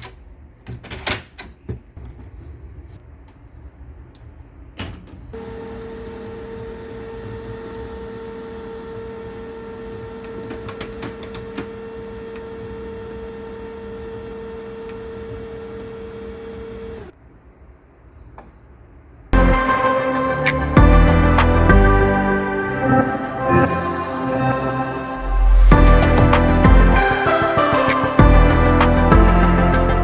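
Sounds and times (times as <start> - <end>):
laser printer motors humming: 5.4 - 17.1
printer clicks: 10.2 - 12.5.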